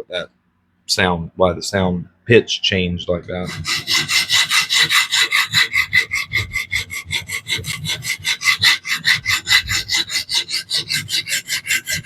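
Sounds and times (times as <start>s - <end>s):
sharpening plate rasping on knife: 3.4s - 12.0s.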